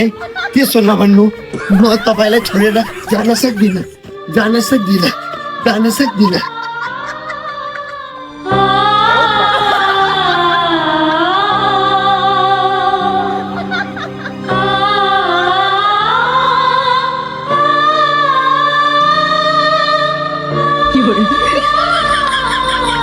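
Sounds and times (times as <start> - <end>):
sustained backing chords: 0.0 - 23.0
woman singing sad song: 0.0 - 23.0.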